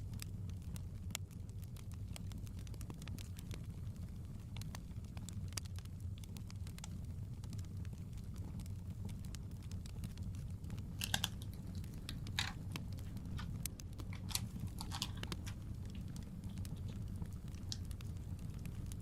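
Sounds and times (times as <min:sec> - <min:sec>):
fire crackling and popping: 0:00.0 - 0:19.0
crisp crunches: 0:11.0 - 0:12.7, 0:14.1 - 0:16.0.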